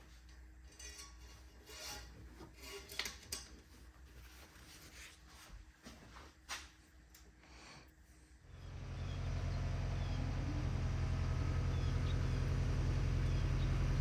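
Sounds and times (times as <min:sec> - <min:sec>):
rubbing and scraping handling noise: 0:00.0 - 0:07.0.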